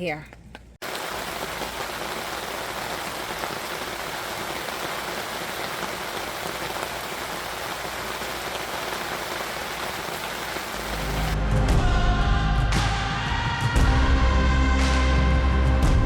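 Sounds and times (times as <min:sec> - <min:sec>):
heavy rain pouring: 0:00.8 - 0:11.8.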